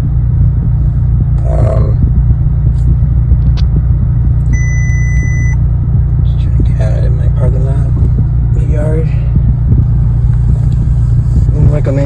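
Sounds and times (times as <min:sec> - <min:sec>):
car engine low rumble: 0:00.0 - 0:12.0
high beep: 0:04.5 - 0:05.6.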